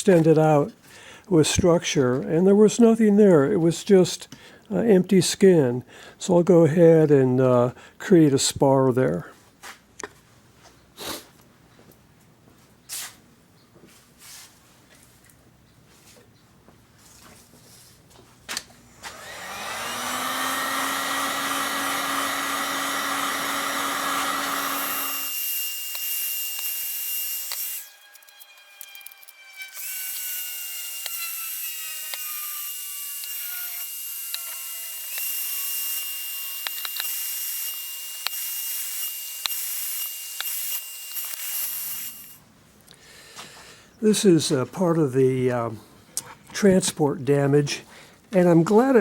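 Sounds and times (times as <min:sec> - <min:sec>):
power tool motor spinning: 0:19.0 - 0:42.4
rasping cutting on wood: 0:19.1 - 0:26.7.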